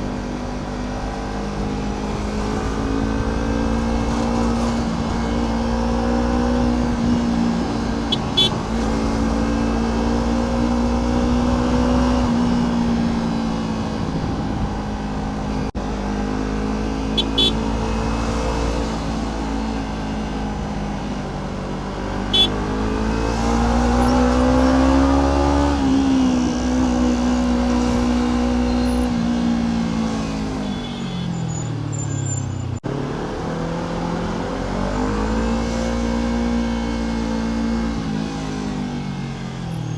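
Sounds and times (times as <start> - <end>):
motorcycle engine running: 0.0 - 24.9.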